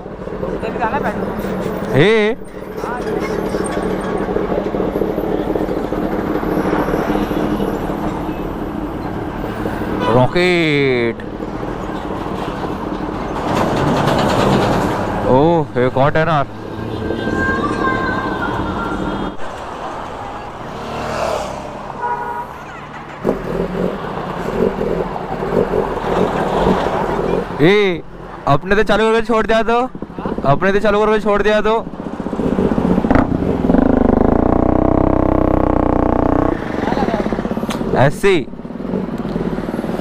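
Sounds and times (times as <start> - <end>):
vehicle engine running steadily: 0.0 - 17.0, 21.8 - 40.0
traffic passing: 0.0 - 40.0
car horn toot: 9.9 - 10.4, 21.9 - 22.7
engine running unevenly: 31.9 - 37.9.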